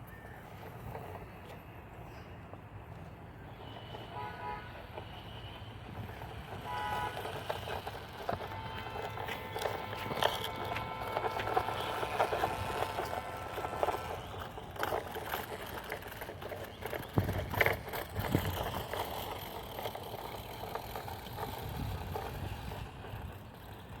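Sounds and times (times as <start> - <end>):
toy car electric motor whining: 5.1 - 24.0.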